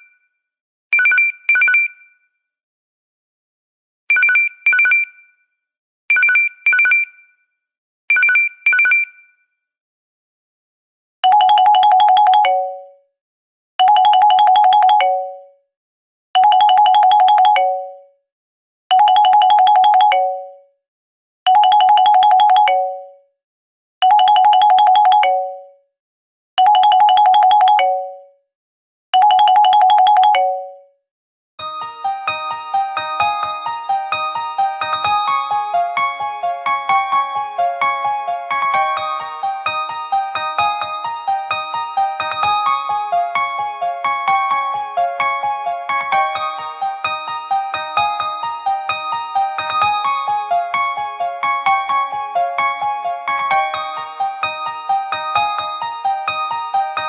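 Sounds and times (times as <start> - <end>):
keyboard melody: 31.6 - 57.0
trilling ringtone: 31.6 - 57.0.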